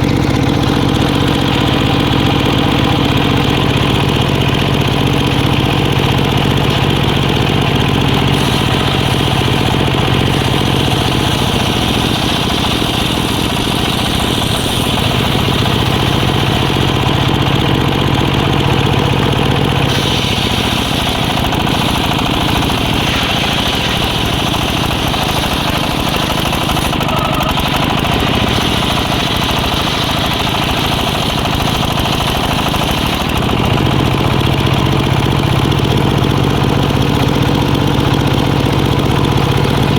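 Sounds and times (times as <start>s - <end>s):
engine-driven circular saw: 0.0s - 39.9s
saw blade hissing through wood: 8.0s - 17.4s, 19.8s - 33.4s.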